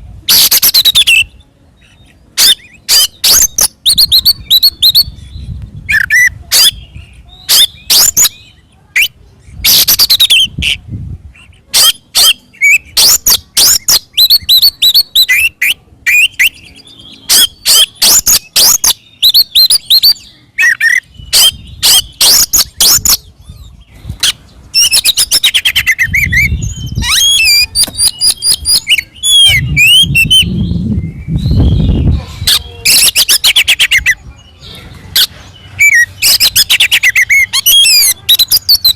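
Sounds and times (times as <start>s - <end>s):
bird singing loudly: 11.5s - 38.9s.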